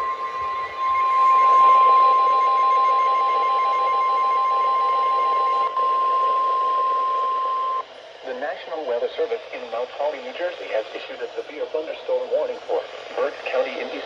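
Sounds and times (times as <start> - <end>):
steady high alarm beep: 0.0 - 7.8
radio hiss: 5.5 - 14.0.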